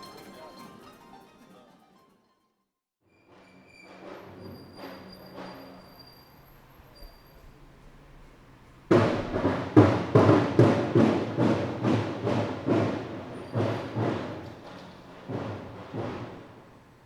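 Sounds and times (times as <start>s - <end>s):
large drum booming beat: 8.8s - 17.0s.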